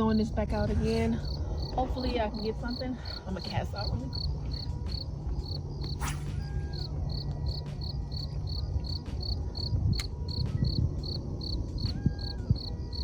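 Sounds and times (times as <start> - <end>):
crickets chirping: 0.0 - 13.0.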